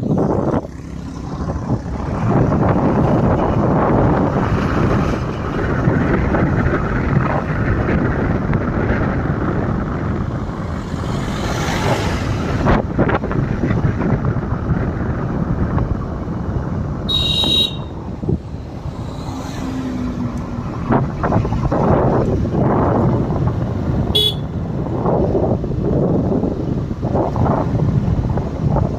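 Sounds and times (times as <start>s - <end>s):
vehicle road and wind noise: 0.0s - 28.9s.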